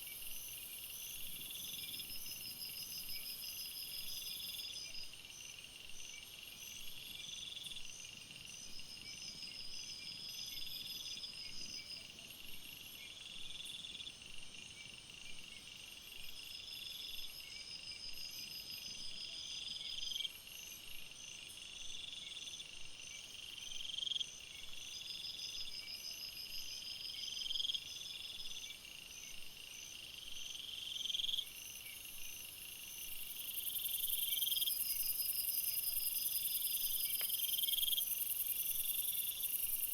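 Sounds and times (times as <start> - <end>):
high insect chirps: 26.2 - 39.9.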